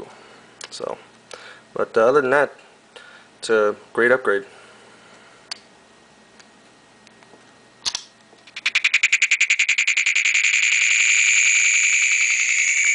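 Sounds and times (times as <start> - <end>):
phone electronic pulsing tone: 8.7 - 12.9.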